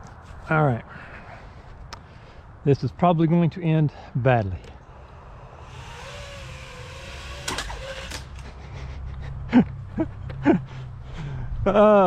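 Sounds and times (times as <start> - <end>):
quadcopter motors whirring: 5.0 - 8.6.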